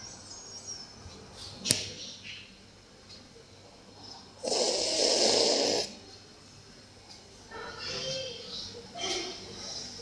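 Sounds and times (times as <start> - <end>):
dog snoring: 4.4 - 5.9.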